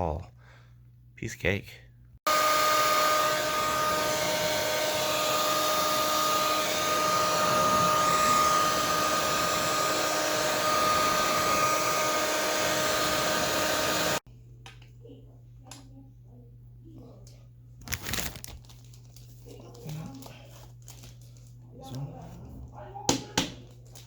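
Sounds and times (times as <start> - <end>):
hair dryer blowing: 2.3 - 14.2.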